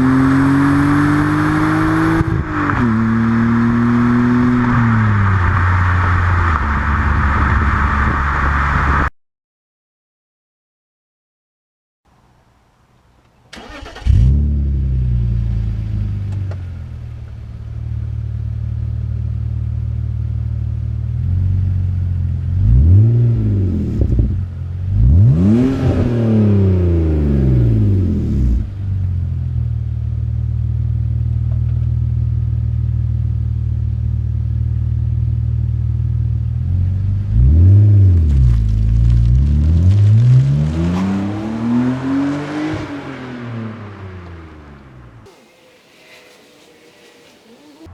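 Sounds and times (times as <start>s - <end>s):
engine revving: 0.0s - 9.1s, 13.6s - 16.3s, 22.5s - 24.3s, 24.9s - 28.7s, 39.6s - 44.5s, 45.3s - 47.9s
car engine starting and idling: 13.5s - 22.6s, 44.0s - 47.9s.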